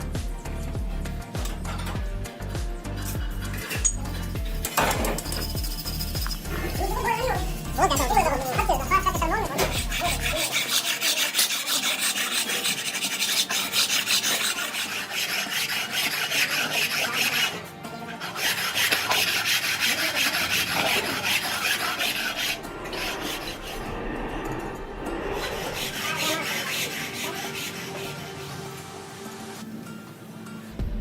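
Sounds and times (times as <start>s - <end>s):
hand tool scraping engine part: 3.0s - 24.6s, 25.3s - 28.5s.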